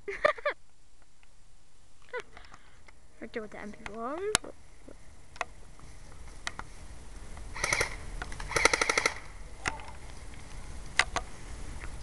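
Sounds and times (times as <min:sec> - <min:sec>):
airsoft guns firing: 0:07.6 - 0:09.4.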